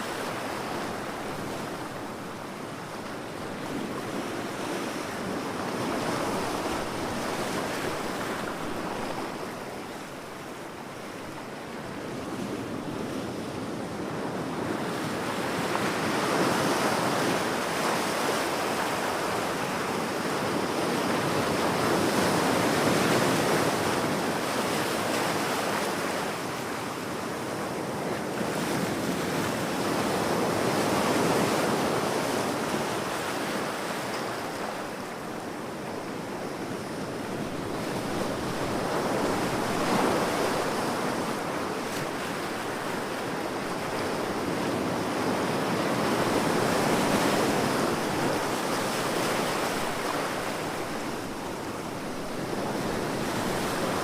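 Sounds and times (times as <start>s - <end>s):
ocean surf breaking: 30.4s - 54.0s.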